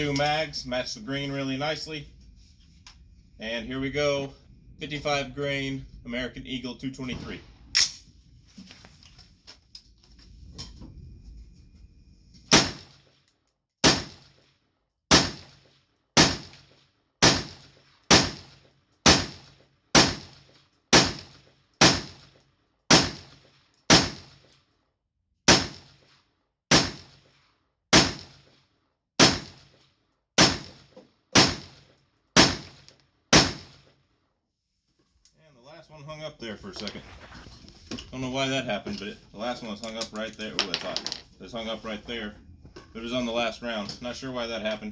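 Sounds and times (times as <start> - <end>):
rifle shots with echo: 12.5 - 13.1, 13.8 - 14.4, 15.1 - 24.5, 25.5 - 26.0, 26.7 - 27.3, 27.9 - 28.6, 29.2 - 29.8, 30.4 - 33.9.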